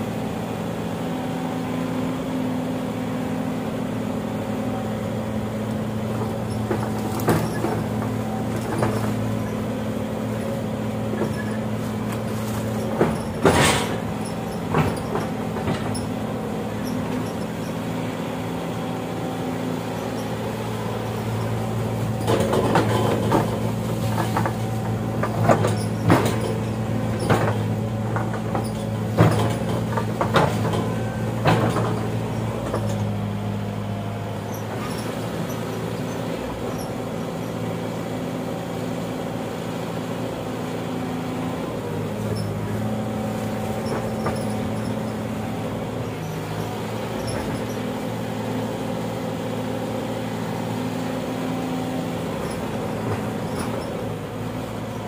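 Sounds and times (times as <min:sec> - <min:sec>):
excavator diesel engine running: 0:00.0 - 0:55.0
metal clanks and knocks: 0:06.2 - 0:09.4, 0:11.1 - 0:17.4, 0:22.1 - 0:33.2.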